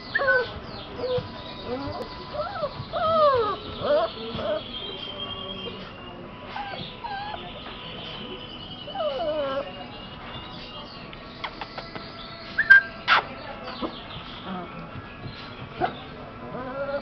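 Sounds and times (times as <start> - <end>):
puppies whining and yelping: 0.1 - 4.6, 6.5 - 7.6, 8.8 - 9.8, 16.5 - 17.0.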